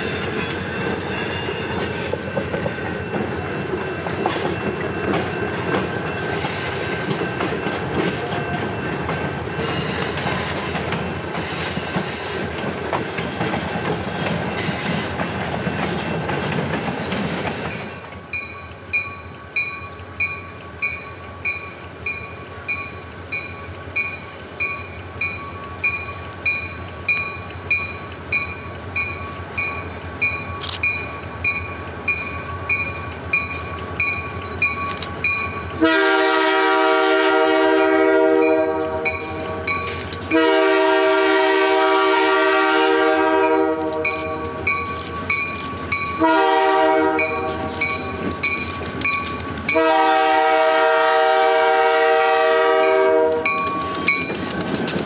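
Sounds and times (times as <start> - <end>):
railroad crossing bell ringing: 0.0 - 12.0, 17.7 - 51.2, 51.9 - 54.6
locomotive air horn blasts: 35.8 - 39.4, 40.3 - 44.6, 46.2 - 47.7, 49.7 - 53.6.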